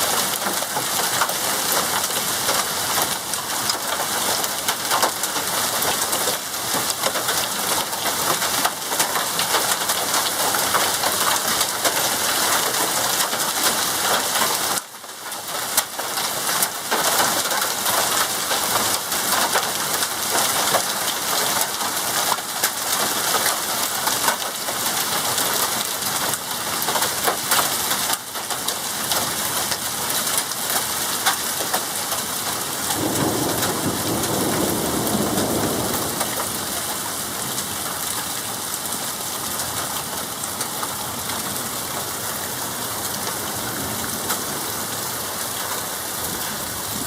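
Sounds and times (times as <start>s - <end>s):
hailstones clattering: 0.0s - 38.5s
heavy rain hiss: 29.9s - 47.0s
low rumble of thunder: 32.9s - 37.2s.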